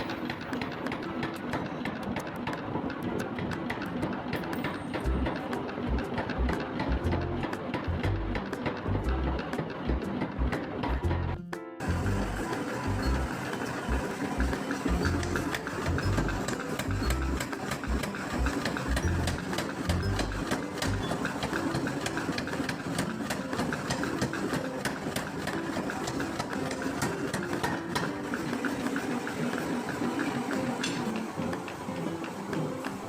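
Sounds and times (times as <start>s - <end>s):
power hammer clattering: 12.4s - 33.0s.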